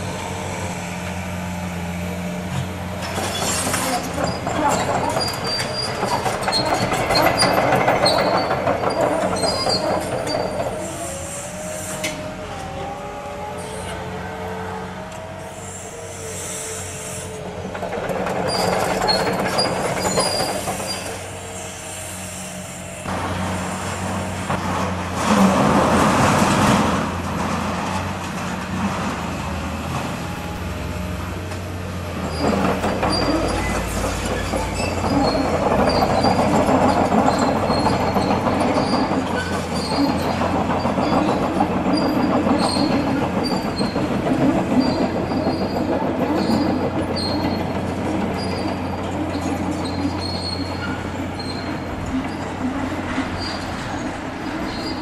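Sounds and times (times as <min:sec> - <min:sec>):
high metal squeals: 0:03.2 - 0:17.6, 0:44.7 - 0:55.0.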